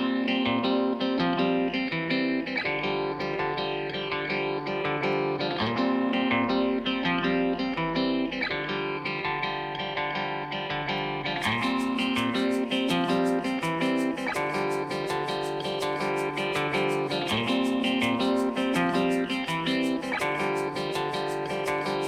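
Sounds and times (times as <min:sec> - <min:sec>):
plucked guitar music: 0:00.0 - 0:22.0
crisp percussive ticks: 0:11.4 - 0:22.0.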